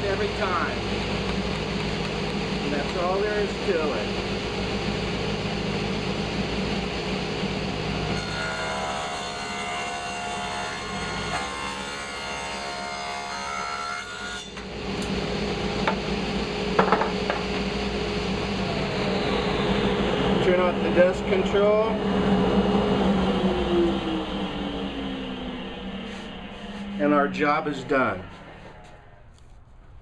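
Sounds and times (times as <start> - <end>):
dust collector running: 0.0 - 13.5, 14.2 - 29.4
table saw cutting wood: 7.4 - 29.3.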